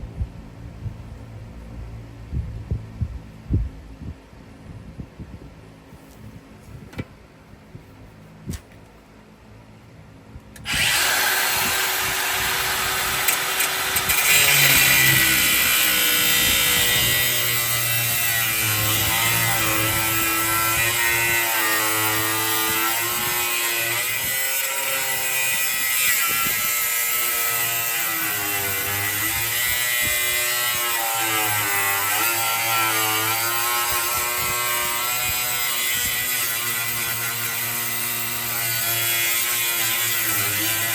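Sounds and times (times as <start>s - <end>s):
power tool whining on steel: 10.6s - 40.9s.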